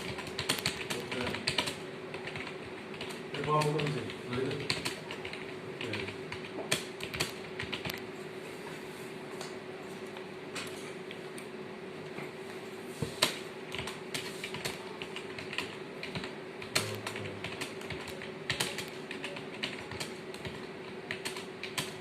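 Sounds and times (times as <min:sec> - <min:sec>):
computer keyboard typing: 0:00.0 - 0:08.0, 0:13.2 - 0:22.0
steady low hum: 0:00.0 - 0:22.0.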